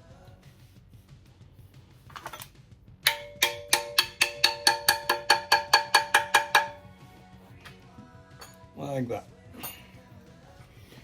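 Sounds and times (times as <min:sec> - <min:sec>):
hammer tapping on metal: 0:03.1 - 0:06.9.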